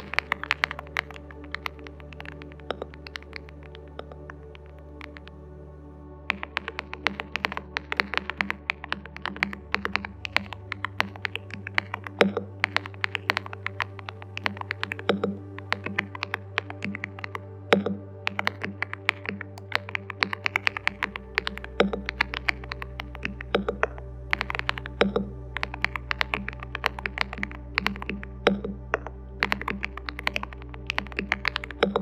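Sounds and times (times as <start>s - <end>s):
soft background music: 0.0s - 32.0s.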